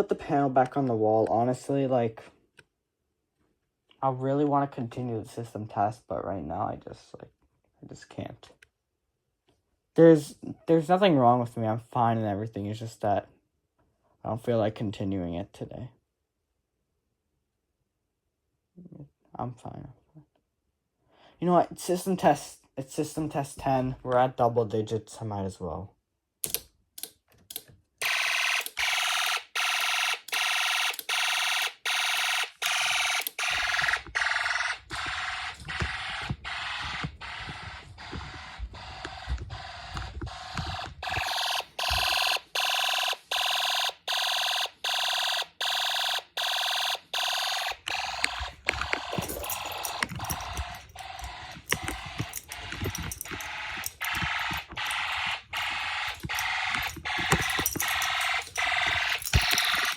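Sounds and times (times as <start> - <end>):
electronic alarm tone pulsing: 29.8 - 59.9.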